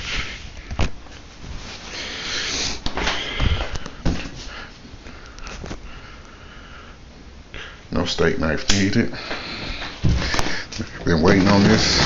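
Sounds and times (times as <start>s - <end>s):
rustling handling noise: 9.2s - 12.0s.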